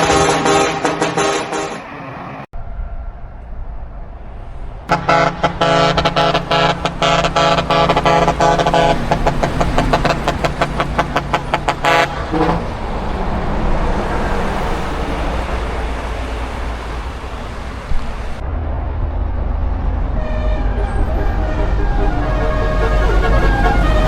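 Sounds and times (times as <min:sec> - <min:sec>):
truck horn toots: 0:00.0 - 0:02.0, 0:04.9 - 0:15.3, 0:20.2 - 0:24.0
vehicle engine and road rumble: 0:00.0 - 0:24.0.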